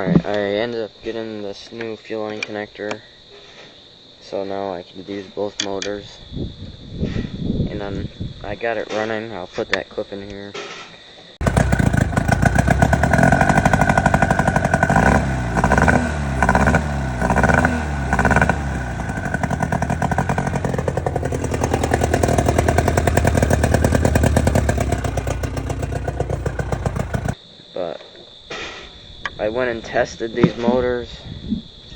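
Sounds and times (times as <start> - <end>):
outboard motor running: 11.4 - 17.3, 18.0 - 27.4.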